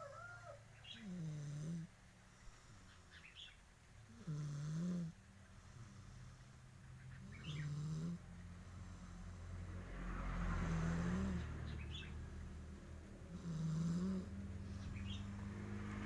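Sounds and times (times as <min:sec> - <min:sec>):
low snores: 0:00.8 - 0:02.8, 0:04.1 - 0:06.5, 0:07.2 - 0:11.8, 0:12.6 - 0:16.0.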